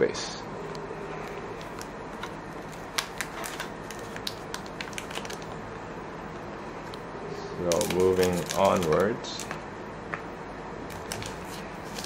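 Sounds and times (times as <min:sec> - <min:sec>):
steady background hum: 0:00.0 - 0:12.0
cards and wrapper crinkling: 0:01.6 - 0:05.6, 0:07.7 - 0:09.5, 0:10.9 - 0:12.0.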